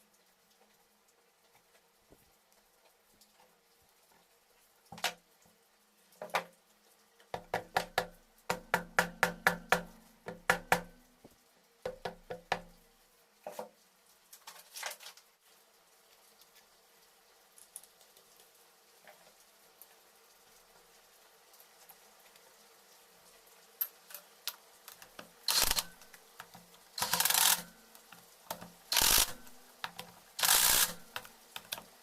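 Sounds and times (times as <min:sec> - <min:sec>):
sharp knocks on metal: 0:07.4 - 0:11.0, 0:11.9 - 0:12.7.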